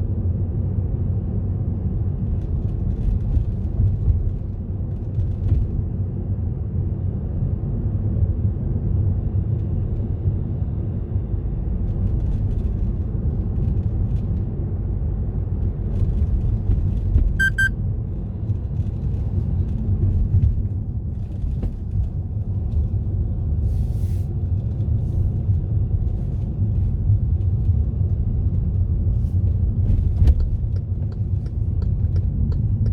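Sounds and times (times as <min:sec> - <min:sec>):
car engine and tyres rumbling: 0:00.0 - 0:32.9
short electronic beep: 0:17.4 - 0:17.7.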